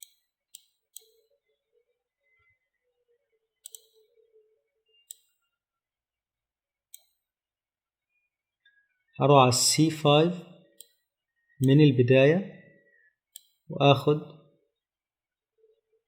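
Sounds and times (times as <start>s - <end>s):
computer mouse clicks: 0.0s - 1.2s, 3.6s - 4.0s, 5.0s - 5.3s, 6.9s - 7.2s, 10.8s - 11.0s, 13.3s - 13.6s.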